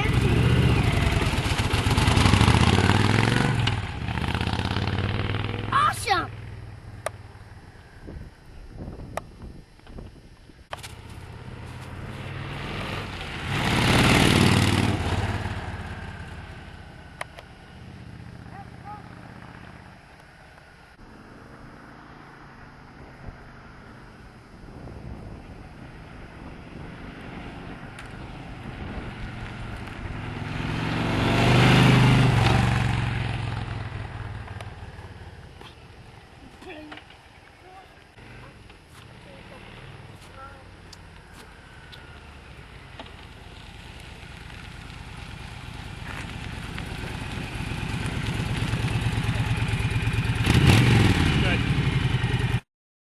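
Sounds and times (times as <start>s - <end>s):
motorcycle engine running: 0.0s - 7.6s, 43.1s - 52.6s
motorcycle engine idling: 33.2s - 50.5s, 51.2s - 52.6s.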